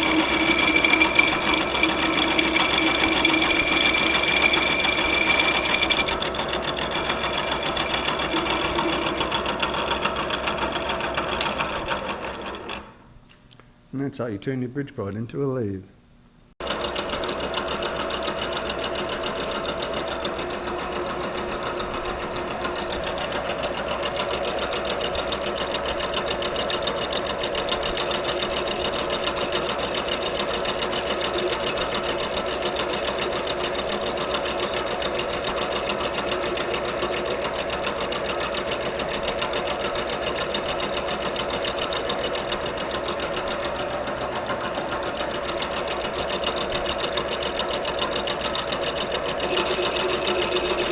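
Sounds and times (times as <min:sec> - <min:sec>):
milling machine running: 0:00.0 - 0:09.8, 0:27.8 - 0:42.9, 0:49.4 - 0:50.9.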